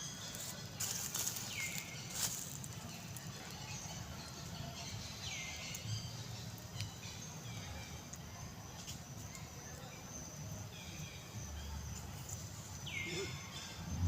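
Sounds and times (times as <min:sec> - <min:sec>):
low steady rumble: 0:13.8 - 0:14.0.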